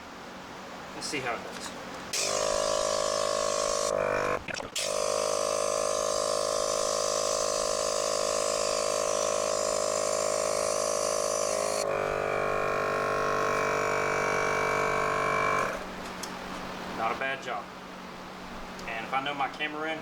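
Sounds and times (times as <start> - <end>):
air hissing: 2.1 - 15.8
air compressor running: 2.1 - 17.2.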